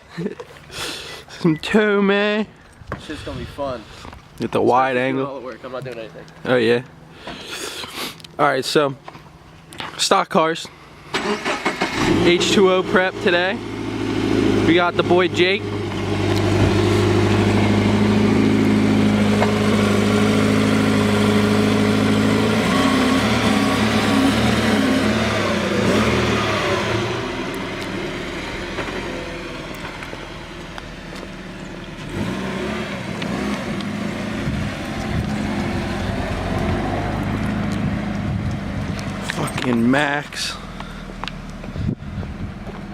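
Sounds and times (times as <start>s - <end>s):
car engine running: 10.8s - 42.9s.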